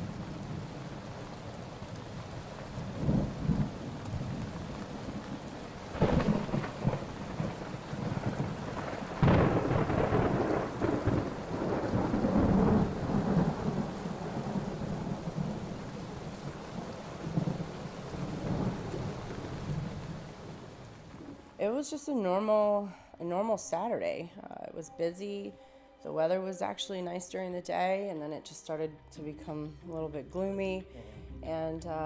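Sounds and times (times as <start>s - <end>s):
steady rain: 0.0s - 21.8s
thunder: 2.8s - 21.4s.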